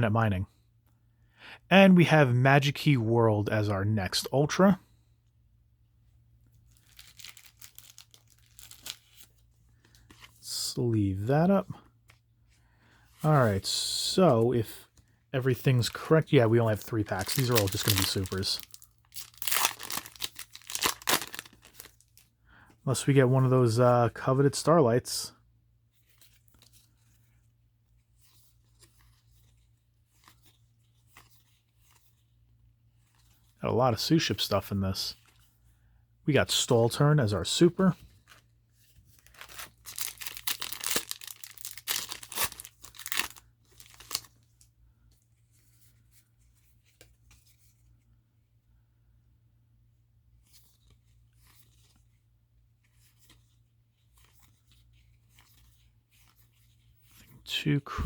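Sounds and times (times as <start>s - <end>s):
trading cards rustling and clicking: 6.6s - 10.4s, 13.2s - 22.3s, 37.2s - 44.6s.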